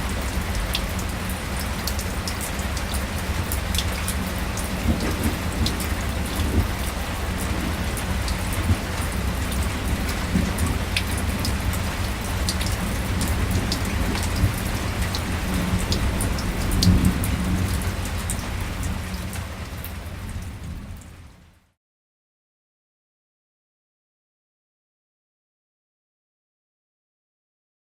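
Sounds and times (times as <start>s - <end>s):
sharp raindrop ticks: 0.0s - 21.1s
light rain hissing: 0.0s - 21.4s.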